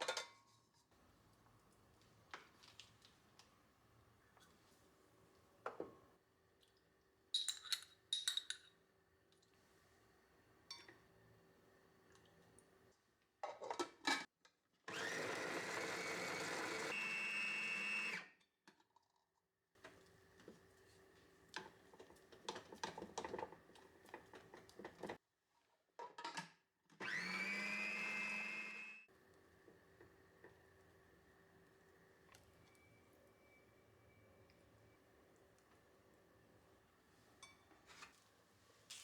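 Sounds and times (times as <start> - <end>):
food processor motor whining: 14.9 - 18.3, 27.0 - 35.4.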